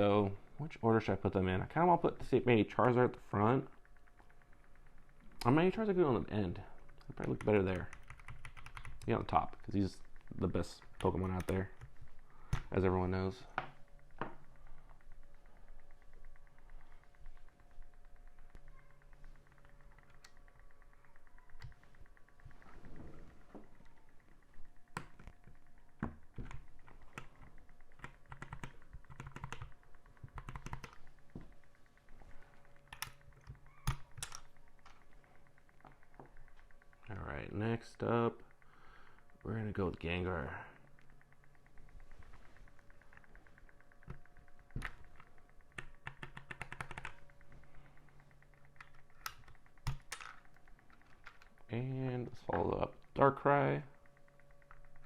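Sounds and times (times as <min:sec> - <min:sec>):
mechanical keyboard clicks: 0:06.9 - 0:13.3, 0:23.7 - 0:31.2, 0:32.6 - 0:36.8, 0:42.8 - 0:47.4, 0:48.0 - 0:51.6.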